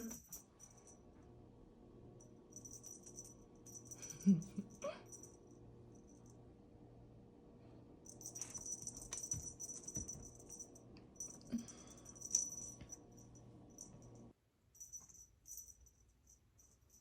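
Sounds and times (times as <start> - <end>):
faint steady hum: 0.0 - 17.0
toy rattling jingle: 2.5 - 5.4, 8.1 - 14.2, 14.8 - 17.0.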